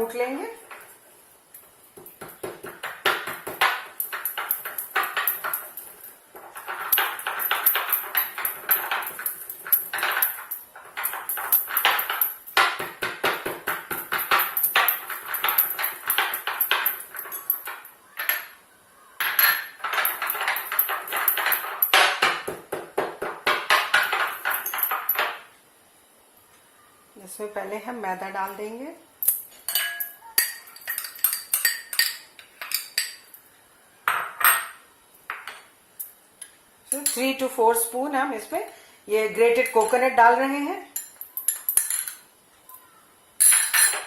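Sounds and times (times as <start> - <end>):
pestle pounding in a mortar: 2.0 - 4.0, 12.6 - 14.6, 22.1 - 24.5.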